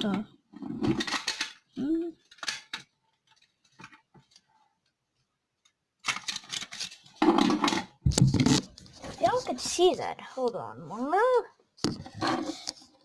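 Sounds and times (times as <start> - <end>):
rustling and clatter: 0.6 - 1.6, 6.0 - 9.7.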